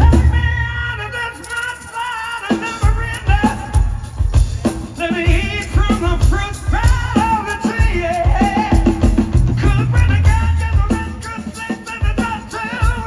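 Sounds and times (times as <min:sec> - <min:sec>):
bass guitar: 0:00.0 - 0:01.0, 0:09.3 - 0:11.0
cymbals: 0:00.0 - 0:13.0
person singing with vibrato: 0:00.0 - 0:13.0.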